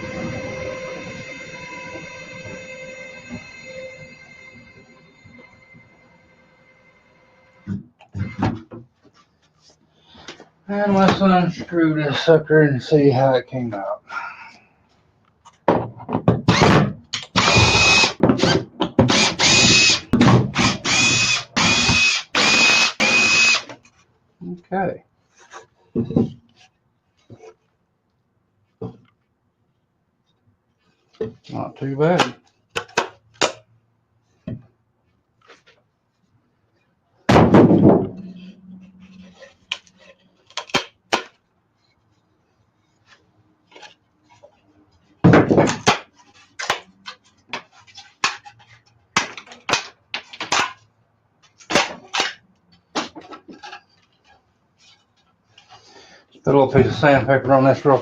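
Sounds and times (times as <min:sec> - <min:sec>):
power drill backing screws out: 0:16.5 - 0:23.7
loud thump: 0:37.3 - 0:38.2.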